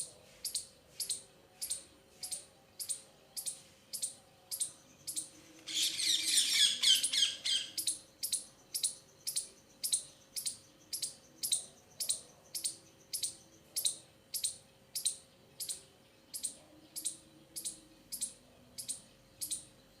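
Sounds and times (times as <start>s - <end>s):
small bird chirping: 0.0s - 20.0s
bird chattering: 0.4s - 19.7s.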